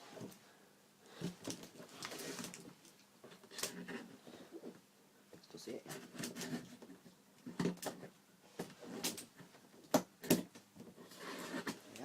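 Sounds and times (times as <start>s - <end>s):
cardboard rustling scrapes: 1.8s - 2.6s, 11.0s - 11.9s.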